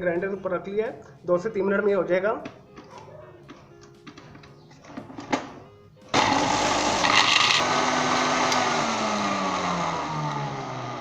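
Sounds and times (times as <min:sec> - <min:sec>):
mixer grinder grinding spices: 0:06.2 - 0:11.0.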